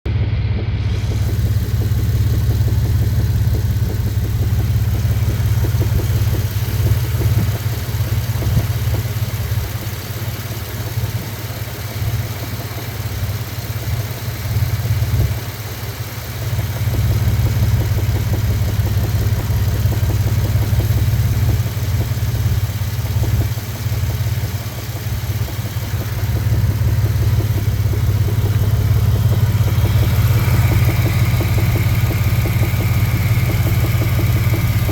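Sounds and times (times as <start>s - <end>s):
engine running with a knock: 0.1s - 34.9s.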